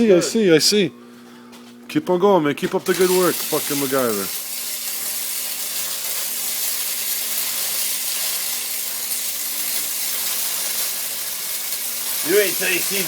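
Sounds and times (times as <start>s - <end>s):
welding arc crackling: 2.8s - 13.0s.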